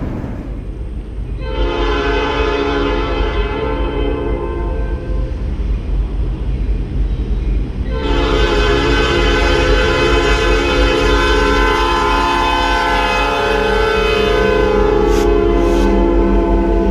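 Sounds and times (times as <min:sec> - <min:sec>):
locomotive air horn blast: 0:00.0 - 0:00.8
low rumble: 0:00.0 - 0:01.4.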